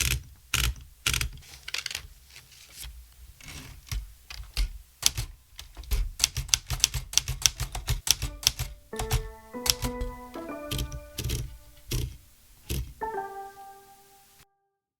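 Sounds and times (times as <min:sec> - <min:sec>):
typewriter keys striking: 0:03.9 - 0:13.0
background music: 0:08.1 - 0:14.7.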